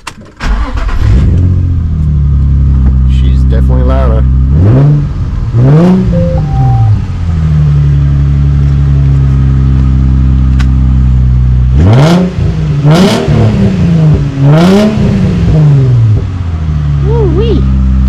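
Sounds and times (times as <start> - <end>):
car engine idling and revving: 0.0 - 18.0.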